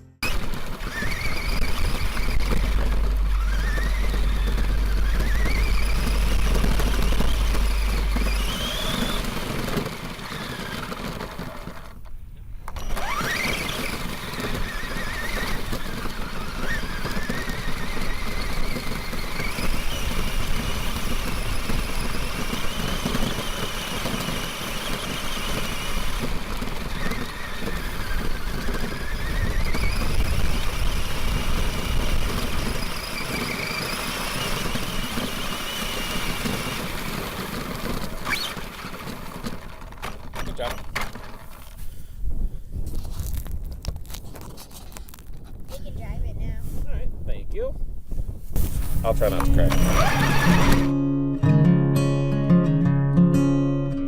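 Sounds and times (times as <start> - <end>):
tyres rushing on ground: 0.2 - 12.1, 12.7 - 41.8
rc truck motor whining: 0.2 - 42.0, 49.3 - 51.0.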